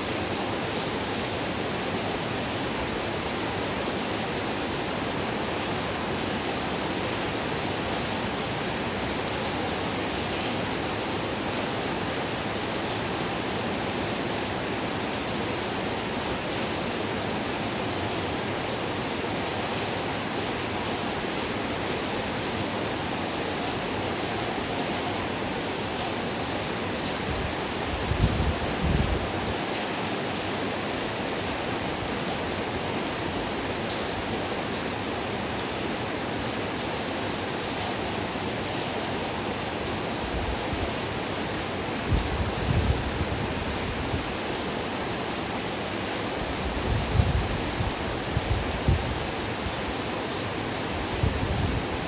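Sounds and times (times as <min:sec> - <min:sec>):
heavy rain falling: 0:00.0 - 0:52.0.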